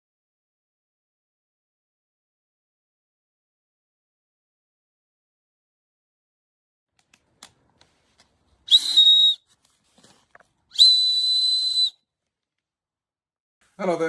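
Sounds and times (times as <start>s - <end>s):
high-pitched whistle blasts: 8.7s - 9.4s, 10.8s - 12.0s.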